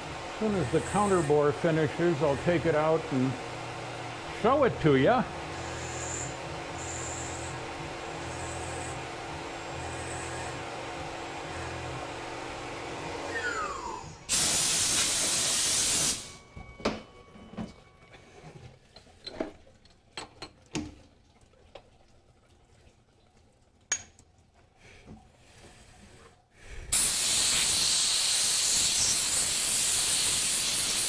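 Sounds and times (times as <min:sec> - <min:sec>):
milling machine running: 0:00.0 - 0:16.6
spindle winding down whine: 0:00.2 - 0:14.3
compressed air hiss: 0:14.3 - 0:16.3, 0:26.9 - 0:31.0.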